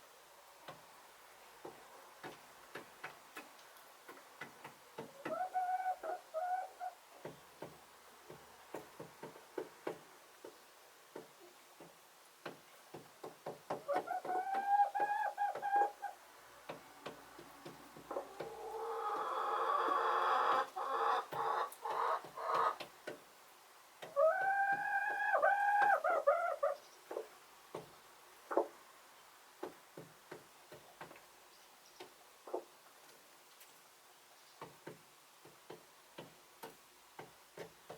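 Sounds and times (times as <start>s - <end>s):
chickens clucking: 4.1s - 7.7s, 13.7s - 23.2s, 24.0s - 28.8s, 32.0s - 33.2s.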